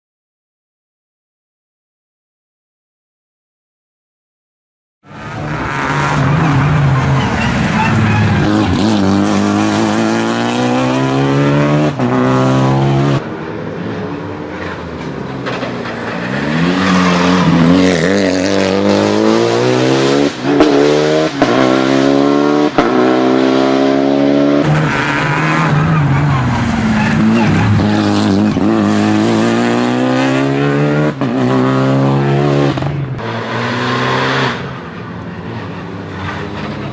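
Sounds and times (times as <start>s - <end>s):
rally car engine revving hard: 5.2s - 13.2s, 16.2s - 34.8s.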